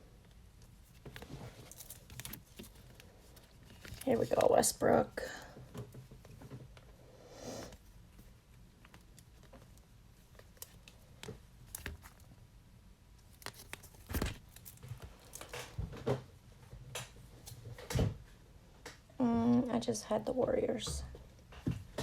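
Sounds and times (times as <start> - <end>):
cards and plastic rustling: 0.3 - 6.7, 7.7 - 12.4, 13.2 - 16.2.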